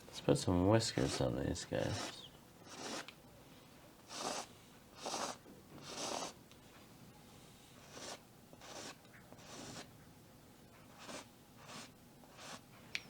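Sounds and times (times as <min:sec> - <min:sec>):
paintbrush strokes on canvas: 0:00.8 - 0:03.1, 0:04.1 - 0:06.4, 0:10.8 - 0:12.6.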